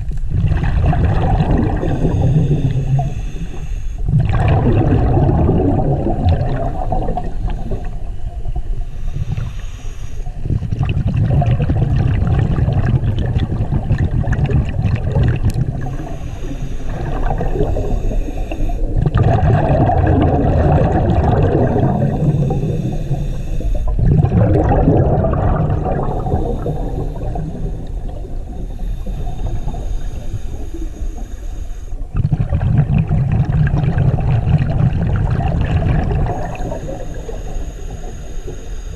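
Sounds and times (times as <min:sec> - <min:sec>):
underwater regulator bubbles gurgling: 0:00.0 - 0:38.9.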